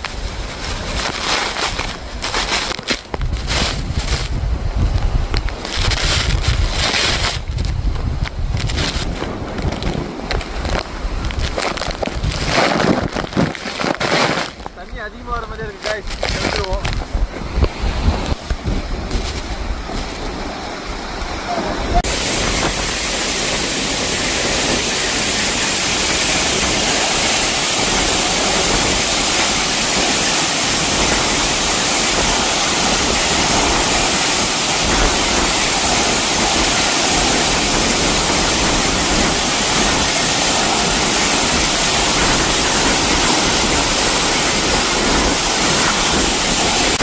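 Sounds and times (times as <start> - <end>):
waterfall crashing: 8.8 - 47.0.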